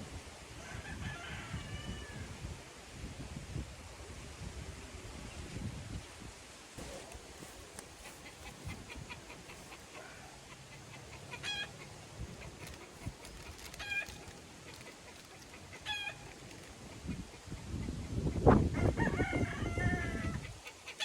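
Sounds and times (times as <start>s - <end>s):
faint outdoor background noise: 0.0s - 21.0s
chicken calling: 6.8s - 17.9s.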